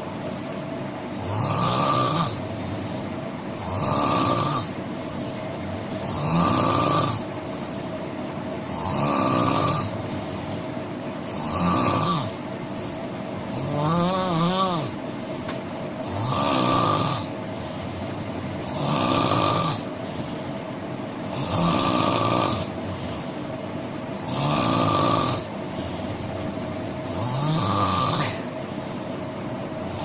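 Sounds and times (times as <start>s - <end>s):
steady background hum: 0.0s - 30.0s
person snoring loudly: 1.2s - 2.4s, 3.6s - 4.8s, 6.0s - 7.3s, 8.6s - 10.4s, 11.2s - 12.5s, 13.5s - 15.0s, 16.0s - 17.8s, 18.6s - 20.0s, 21.3s - 23.3s, 24.2s - 26.1s, 27.0s - 28.5s.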